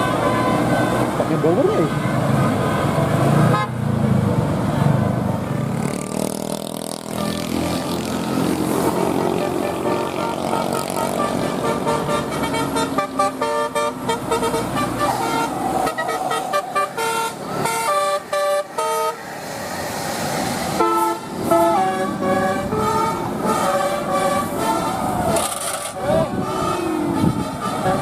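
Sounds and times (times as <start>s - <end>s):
musical bus horn playing a tune: 0.0s - 3.8s, 8.7s - 19.3s, 20.8s - 28.0s
vehicle noise: 0.0s - 28.0s.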